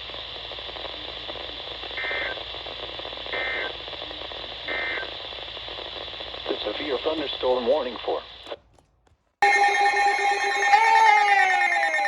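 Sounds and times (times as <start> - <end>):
radio hiss: 0.0 - 8.6
warbling digital data tones: 9.4 - 12.0.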